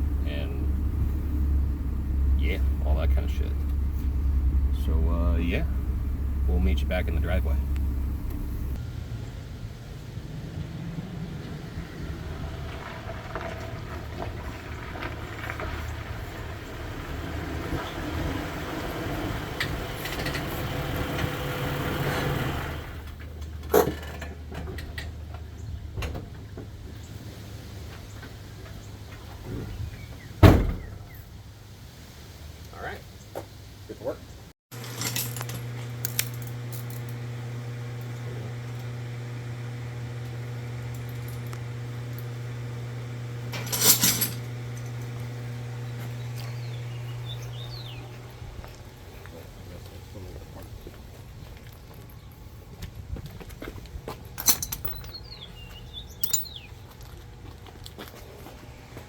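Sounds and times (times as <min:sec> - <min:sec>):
steady low hum: 0:00.0 - 0:12.1
engine running: 0:00.0 - 0:29.7, 0:34.7 - 0:59.0
road noise: 0:00.0 - 0:59.0
metal clatter: 0:43.5 - 0:44.5, 0:54.4 - 0:55.3, 0:56.2 - 0:56.6.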